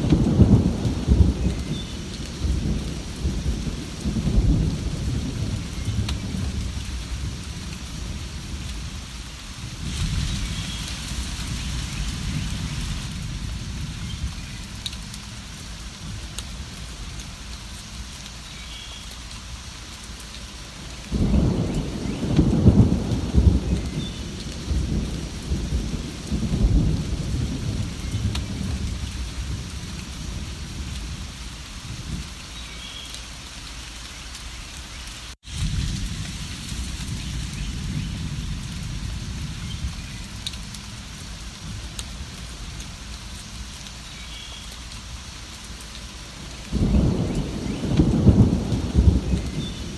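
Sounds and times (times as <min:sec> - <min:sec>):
thunder rumbling: 0:00.0 - 0:17.4, 0:21.0 - 0:32.3, 0:35.4 - 0:43.7, 0:46.3 - 0:49.9
steady rain falling: 0:00.0 - 0:49.9.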